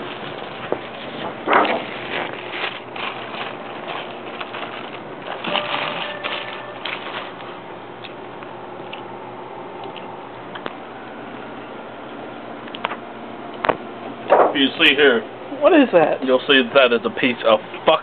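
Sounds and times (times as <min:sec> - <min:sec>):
chewing crunchy tacos: 0:00.0 - 0:09.1.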